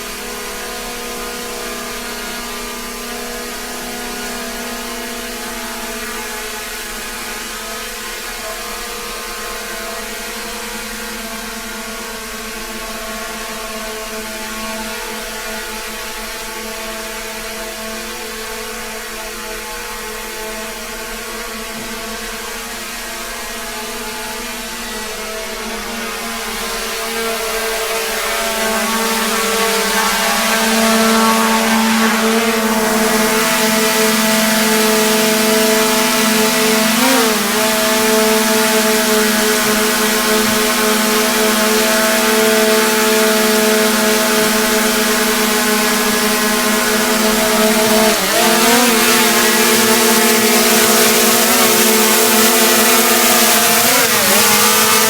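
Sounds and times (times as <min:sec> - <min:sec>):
machine drone: 0:25.1 - 0:55.0.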